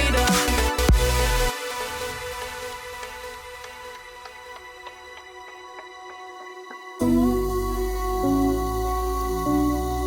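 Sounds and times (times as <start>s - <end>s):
deep bass: 0.0s - 1.5s, 7.0s - 10.0s
synth chords: 0.0s - 10.0s.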